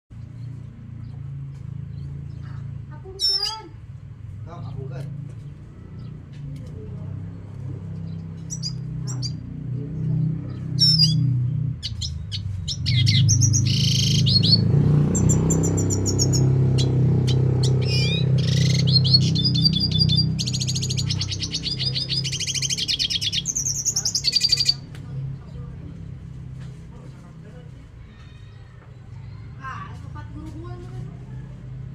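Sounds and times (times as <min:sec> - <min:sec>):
finch singing: 0:01.8 - 0:03.8, 0:07.2 - 0:26.0.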